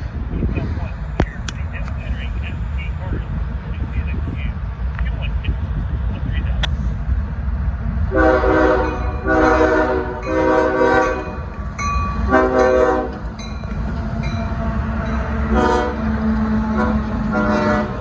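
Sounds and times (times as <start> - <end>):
low rumble of passing train: 0.0 - 18.0
locomotive air horn blasts: 8.1 - 11.5, 12.2 - 13.3, 15.5 - 18.0.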